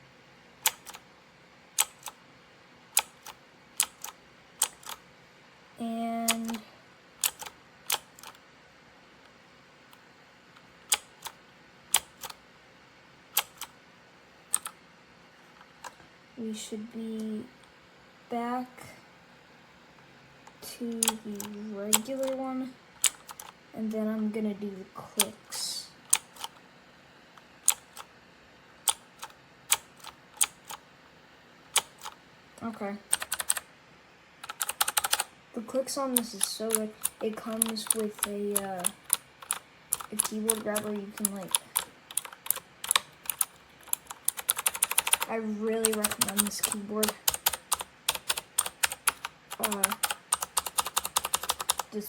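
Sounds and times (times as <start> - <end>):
mechanical keyboard key clacks: 0.6 - 1.0, 1.8 - 2.2, 3.0 - 5.0, 7.2 - 8.4, 10.9 - 12.4, 13.4 - 13.7, 14.5 - 14.7, 23.0 - 23.6, 28.9 - 30.8, 31.7 - 32.2, 33.1 - 33.6, 34.4 - 35.3, 36.7 - 45.3, 45.9 - 51.9.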